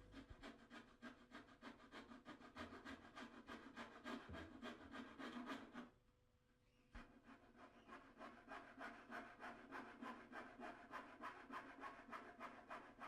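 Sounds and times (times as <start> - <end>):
coping saw cutting wood: 7.9 - 13.0.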